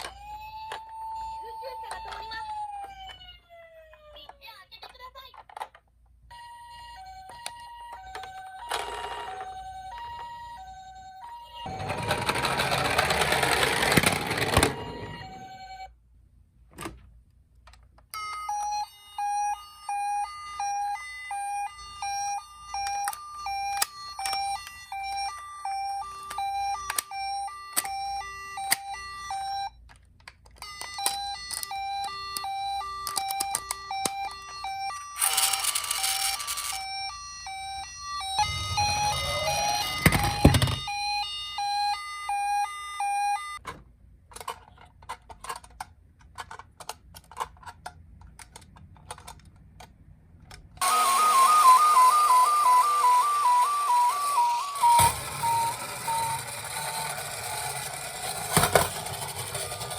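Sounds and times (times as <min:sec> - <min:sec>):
two-tone toy ambulance siren: 0:00.0 - 0:04.7, 0:06.3 - 0:16.0, 0:18.1 - 0:43.6, 0:50.8 - 0:59.9
fast clicky siren beeps: 0:38.2 - 0:41.8, 0:50.8 - 0:57.6.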